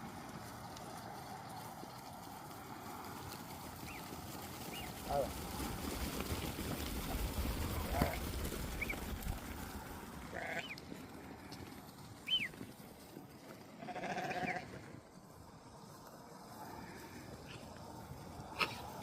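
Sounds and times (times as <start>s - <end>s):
sheep bleating: 7.8s - 8.2s, 10.3s - 10.8s, 13.8s - 14.8s.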